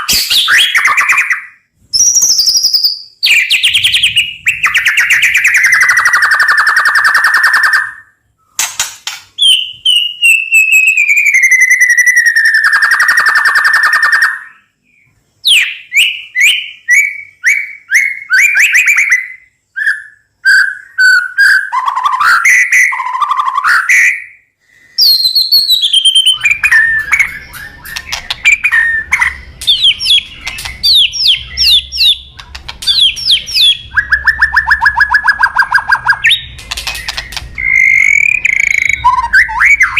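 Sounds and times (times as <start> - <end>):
songbird singing varied song: 9.4 - 24.4, 25.0 - 39.9.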